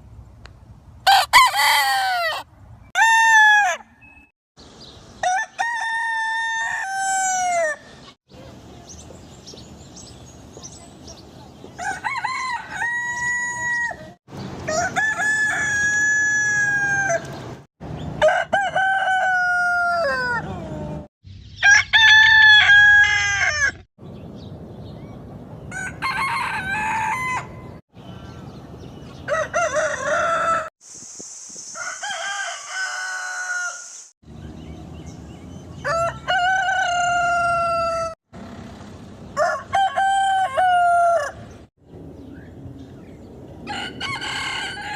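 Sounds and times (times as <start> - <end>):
roosters crowing: 1.1 - 4.0, 5.2 - 7.9, 11.8 - 17.4, 18.2 - 23.9, 25.7 - 27.8, 29.2 - 30.7, 31.7 - 34.1, 35.8 - 38.6, 39.2 - 41.7, 43.6 - 44.9
loud hiss: 30.8 - 32.0.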